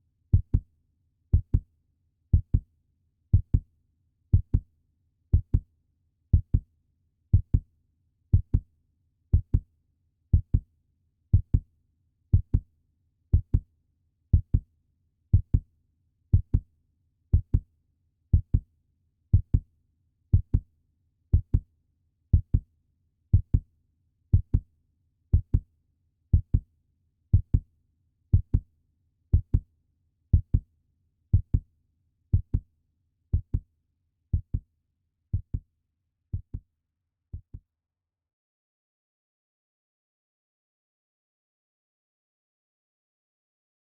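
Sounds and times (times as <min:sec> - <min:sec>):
heartbeat thumps: 0:36.4 - 0:36.6.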